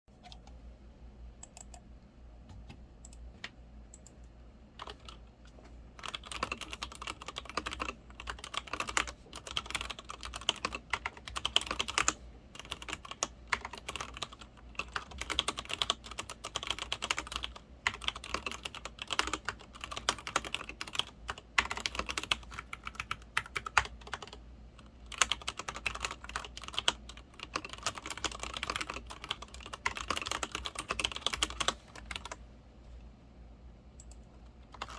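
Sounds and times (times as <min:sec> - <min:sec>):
typing on mechanical keyboard: 0:04.8 - 0:05.2, 0:06.0 - 0:32.4, 0:34.0 - 0:34.9.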